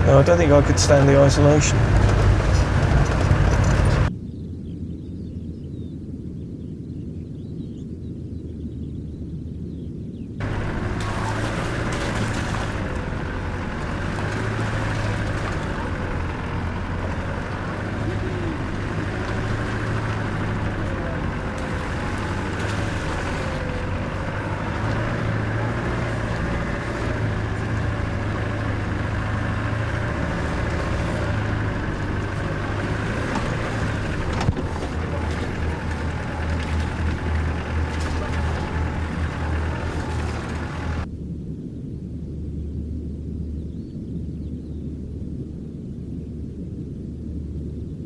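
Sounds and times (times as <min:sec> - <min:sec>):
vehicle engine running: 0:00.0 - 0:04.1, 0:10.4 - 0:41.1.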